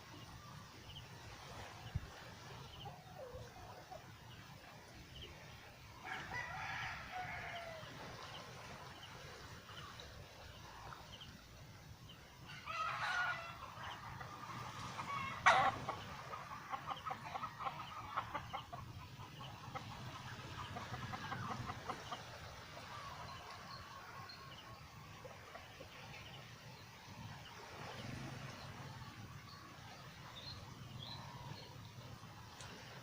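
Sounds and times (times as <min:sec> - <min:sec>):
chickens calling: 0:12.5 - 0:26.0
chickens clucking rapidly: 0:15.0 - 0:22.3.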